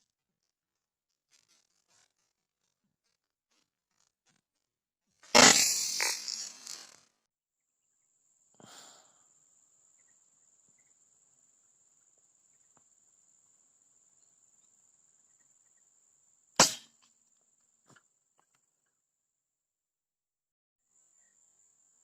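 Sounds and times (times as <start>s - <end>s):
air rifle shot: 5.4s - 6.2s, 16.6s - 16.9s.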